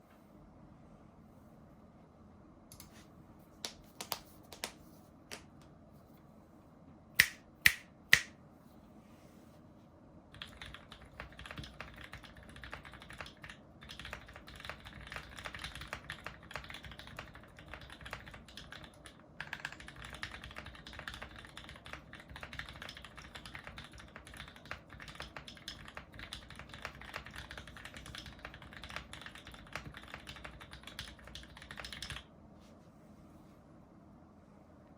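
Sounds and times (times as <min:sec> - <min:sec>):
mechanical keyboard typing: 0:10.3 - 0:32.3.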